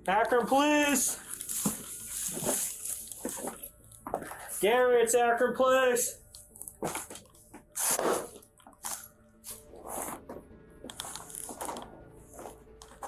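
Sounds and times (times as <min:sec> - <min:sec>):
faint background music: 0:00.0 - 0:13.0
scuffing and rustling: 0:00.9 - 0:04.7.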